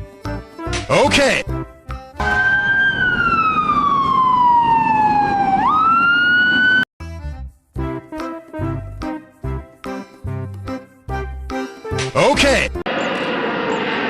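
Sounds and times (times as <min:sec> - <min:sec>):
bouncy children's tune: 0:00.0 - 0:02.8, 0:07.0 - 0:12.8
electronic toy siren wailing: 0:02.2 - 0:06.9.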